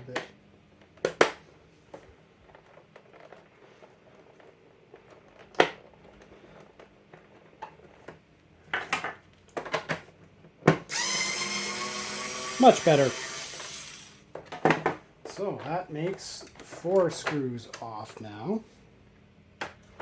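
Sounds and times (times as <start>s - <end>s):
screwdriver motor running: 10.9s - 14.2s.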